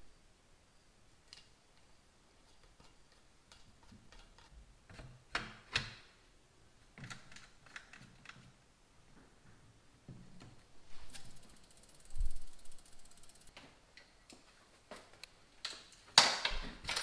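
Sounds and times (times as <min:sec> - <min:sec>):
light mechanical clicks: 0:11.1 - 0:13.6.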